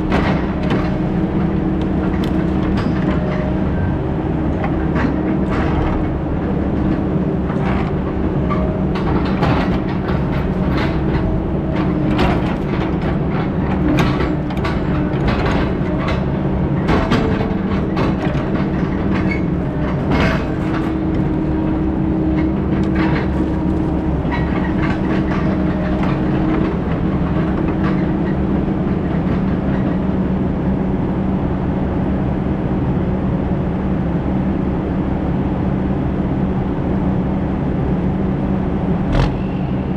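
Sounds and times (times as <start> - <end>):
metal clanks and rattles: 0.0 - 3.8, 4.6 - 30.0
heavy diesel engine running: 0.0 - 39.9.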